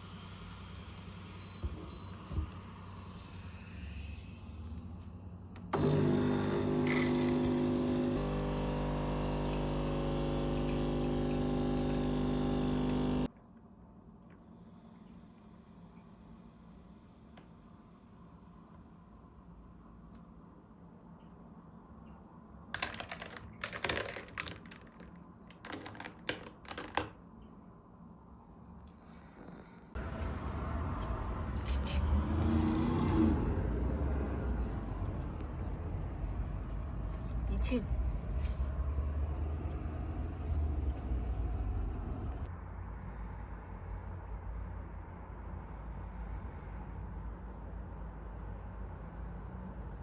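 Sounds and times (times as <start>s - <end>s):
low rumble of city traffic: 26.7s - 50.0s.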